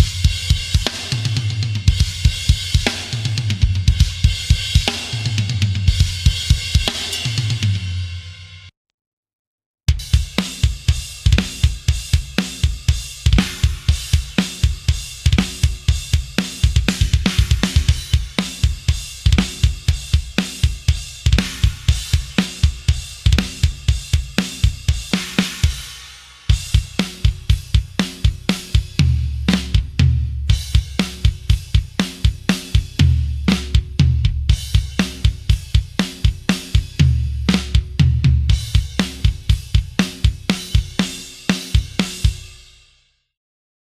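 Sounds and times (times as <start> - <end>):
rapid kick drum: 0.0 - 7.9, 9.9 - 42.8
metal drum kit grooves: 0.0 - 8.5, 9.9 - 42.6.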